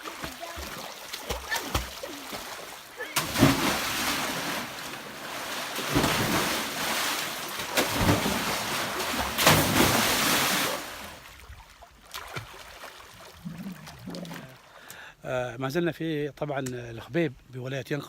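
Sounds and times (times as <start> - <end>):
rushing water: 0.0 - 14.7.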